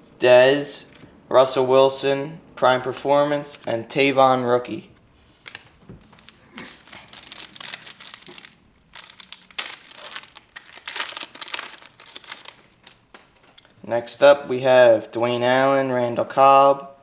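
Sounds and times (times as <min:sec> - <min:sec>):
wrapper crinkling and tearing: 0:05.2 - 0:13.8.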